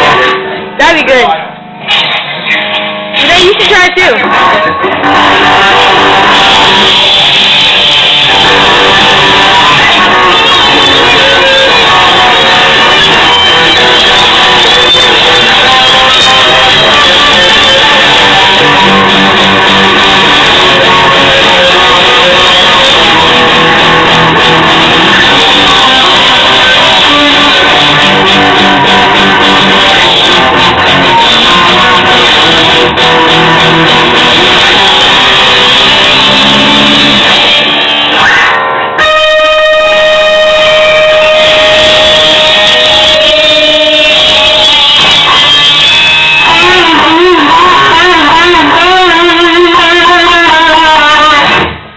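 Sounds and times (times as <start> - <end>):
steady held tone: 0.0 - 50.5
loud guitar playing: 0.0 - 51.9.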